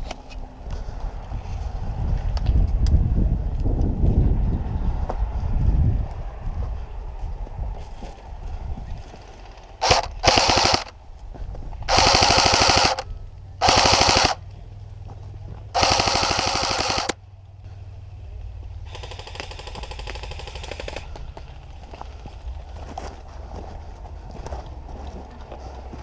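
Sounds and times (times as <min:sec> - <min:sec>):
toy guns firing full-auto bursts: 0:09.8 - 0:10.9, 0:11.9 - 0:14.4, 0:15.8 - 0:17.2, 0:18.9 - 0:21.1.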